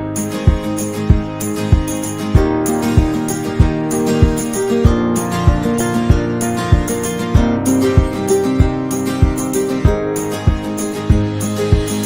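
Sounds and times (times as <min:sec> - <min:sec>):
background music with steady beat: 0:00.0 - 0:12.0.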